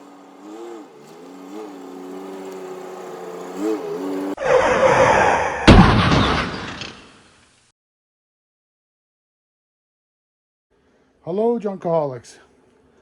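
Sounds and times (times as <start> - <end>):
engine running and revving: 0.0 - 4.4.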